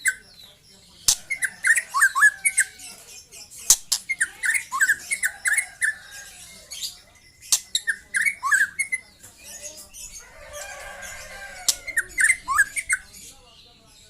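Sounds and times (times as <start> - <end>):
bird singing chirps and whistles: 3.7 - 9.1.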